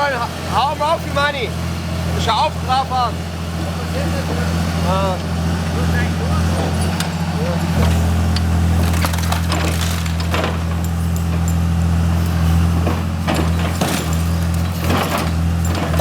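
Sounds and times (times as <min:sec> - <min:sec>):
excavator diesel engine: 0:00.0 - 0:16.0
car body crunching: 0:06.4 - 0:11.8.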